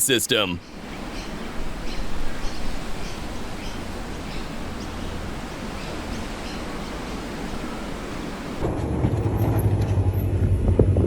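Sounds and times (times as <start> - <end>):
outdoor background hiss: 0.0 - 8.7.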